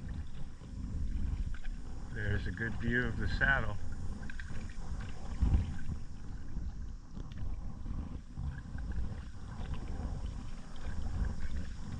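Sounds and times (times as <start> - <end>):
wind buffeting microphone: 0.0 - 11.9
faint ticks: 3.0 - 11.9.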